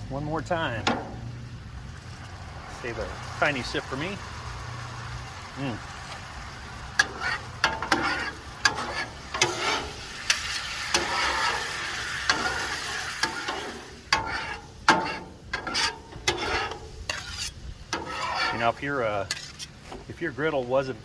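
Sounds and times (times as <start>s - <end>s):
liquid sizzling and bubbling: 0.4s - 20.2s
spatula scraping on griddle: 6.9s - 20.2s.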